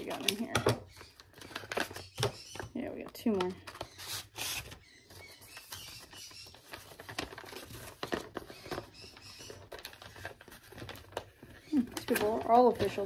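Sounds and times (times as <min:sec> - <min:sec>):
paper and plastic rustling: 0:00.0 - 0:13.0.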